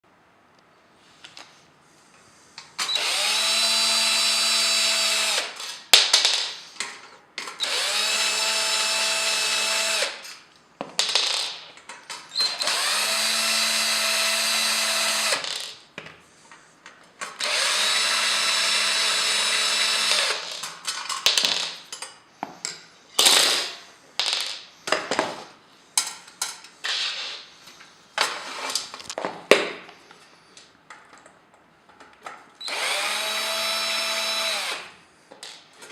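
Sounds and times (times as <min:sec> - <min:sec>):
cordless drill spinning: 0:02.8 - 0:05.7, 0:07.6 - 0:10.2, 0:12.3 - 0:15.4, 0:17.4 - 0:20.6, 0:32.6 - 0:34.9
clicks and knocks of parts handled: 0:06.0 - 0:07.6, 0:10.2 - 0:12.4, 0:20.1 - 0:23.5, 0:26.0 - 0:27.0, 0:27.7 - 0:32.6, 0:35.3 - 0:35.9.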